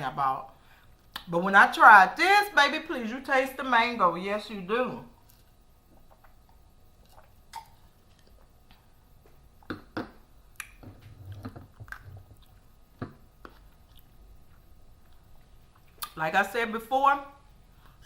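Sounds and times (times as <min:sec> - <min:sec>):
person chewing food: 0:05.2 - 0:16.2
wet mouth clicks and smacks: 0:05.3 - 0:10.8, 0:15.8 - 0:16.2.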